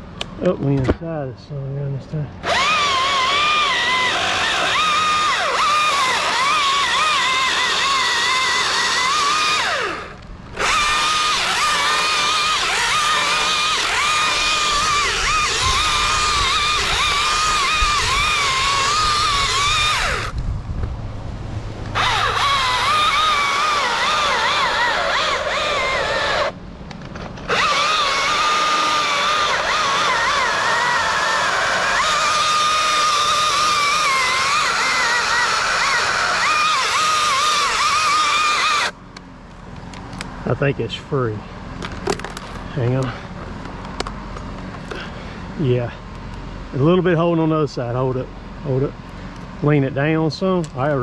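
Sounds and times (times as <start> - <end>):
chainsaw cutting a limb: 2.4 - 20.4, 21.9 - 39.0.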